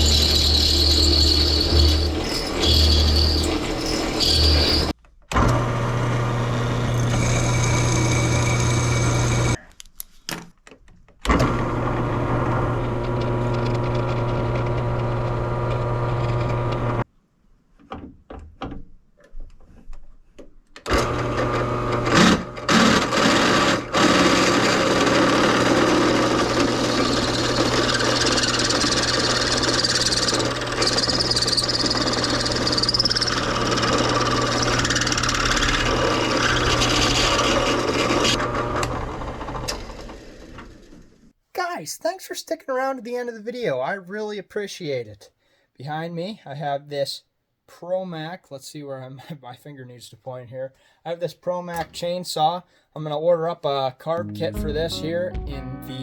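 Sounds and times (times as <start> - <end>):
drill press motor humming: 0.0 - 9.6.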